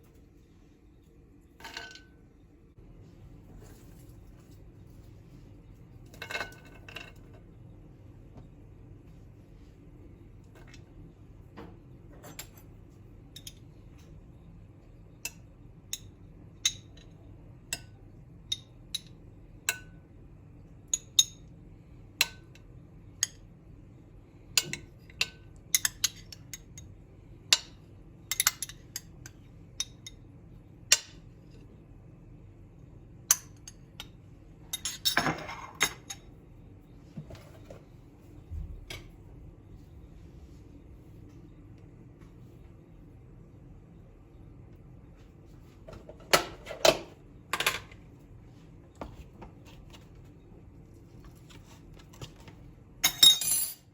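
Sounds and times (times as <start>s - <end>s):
dishes and cutlery clinking: 34.7s - 36.3s.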